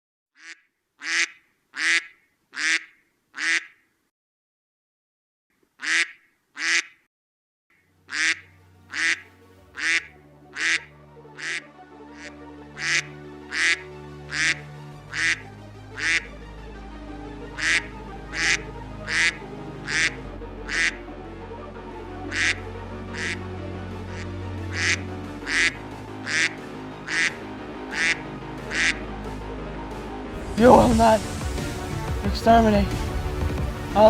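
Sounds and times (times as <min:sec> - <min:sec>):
duck quacks: 0:00.4 - 0:03.8, 0:05.8 - 0:07.1, 0:08.1 - 0:15.4, 0:16.0 - 0:16.3, 0:17.6 - 0:21.0, 0:22.3 - 0:23.4, 0:24.1 - 0:29.0, 0:30.4 - 0:31.3.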